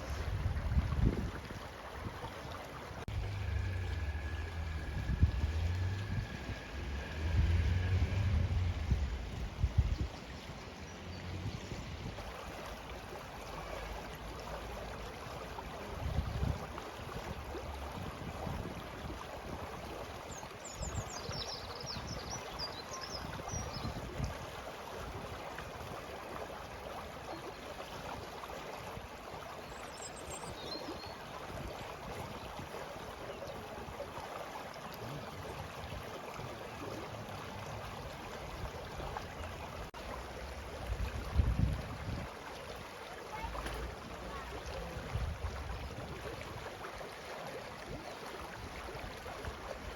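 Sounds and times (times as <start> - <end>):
stream flowing: 0.0 - 49.9.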